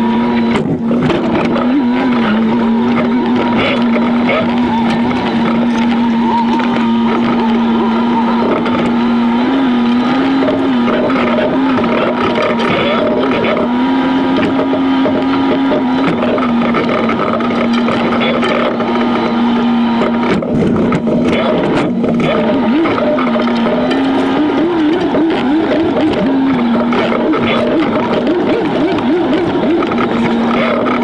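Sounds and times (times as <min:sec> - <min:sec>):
sped-up engine buzzing drone: 0:00.0 - 0:31.0.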